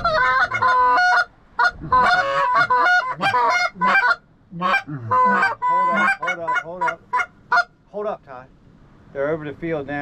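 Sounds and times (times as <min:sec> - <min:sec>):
geese honking: 0:00.0 - 0:07.8.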